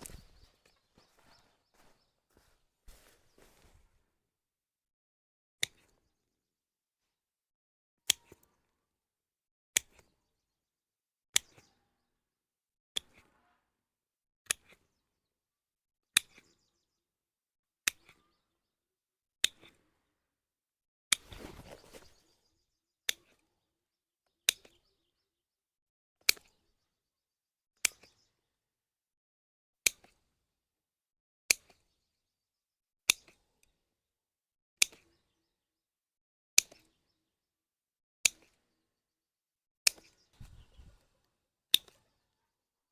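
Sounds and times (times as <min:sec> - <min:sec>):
brief rustling scrape: 0:21.2 - 0:22.2.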